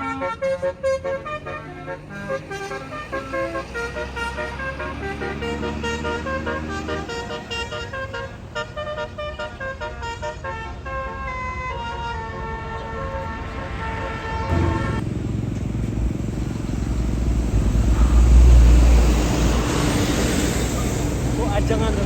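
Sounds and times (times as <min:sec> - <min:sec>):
bus horn playing a melody: 0:00.0 - 0:16.1
bus engine rumbling: 0:00.0 - 0:22.0.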